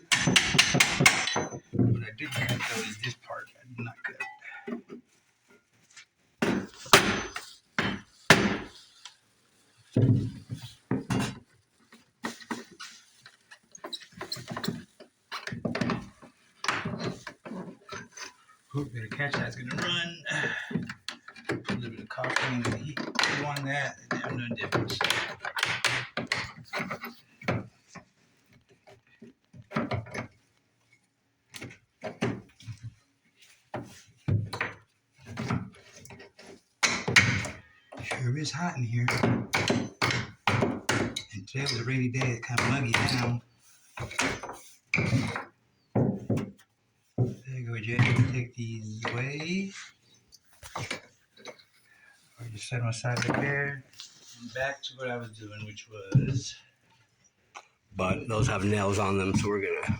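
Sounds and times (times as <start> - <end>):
wooden trim knocking and clattering: 0.0 - 3.0, 14.1 - 28.0, 33.8 - 38.2, 39.0 - 49.6, 53.0 - 53.6.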